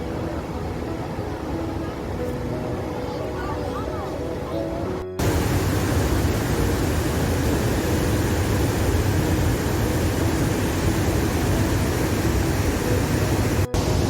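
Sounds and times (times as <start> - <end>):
loud steady rushing noise: 5.0 - 14.0.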